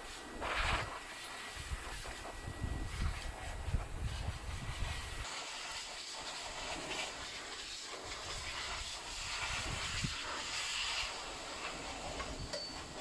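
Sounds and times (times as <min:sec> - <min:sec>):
blower air stream hissing: 0:00.0 - 0:13.0.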